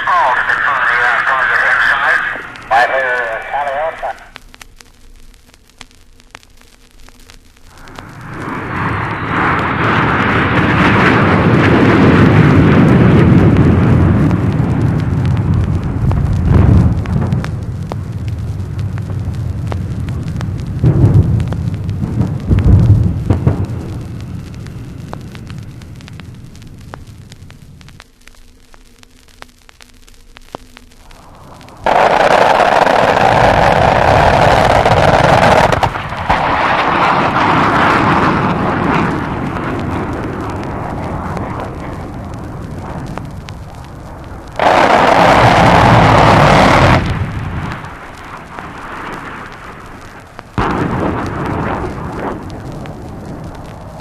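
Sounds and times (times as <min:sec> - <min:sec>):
aircraft attack noise bursts: 0:00.0 - 0:04.4, 0:07.7 - 0:15.0, 0:31.0 - 0:49.8
faint hum: 0:00.0 - 0:54.0
record surface crackle: 0:00.0 - 0:54.0.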